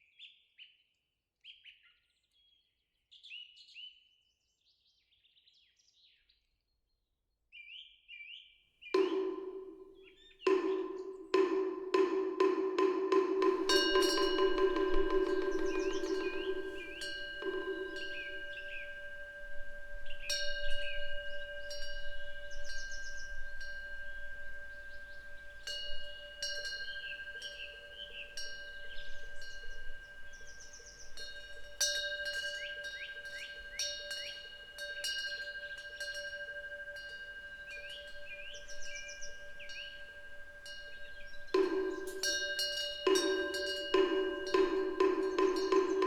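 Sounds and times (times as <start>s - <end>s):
birds chirping: 9.0s - 12.0s, 13.4s - 46.0s
wind bell ringing: 9.0s - 46.0s.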